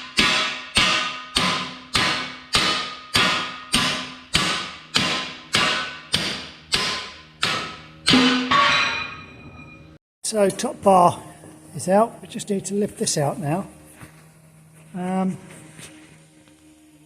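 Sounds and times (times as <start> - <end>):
hammer striking metal bar: 0.0 - 9.9.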